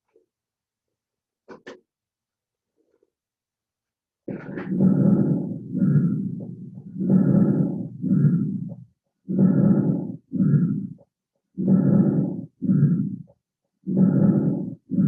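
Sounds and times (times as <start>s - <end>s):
breathing through stethoscope: 4.3s - 15.0s.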